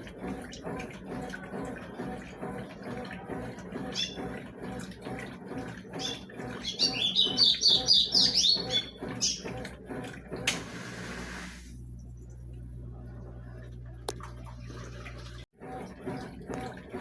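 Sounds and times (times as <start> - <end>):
washing machine sloshing: 0.0 - 17.0
birds chirping: 5.9 - 9.6.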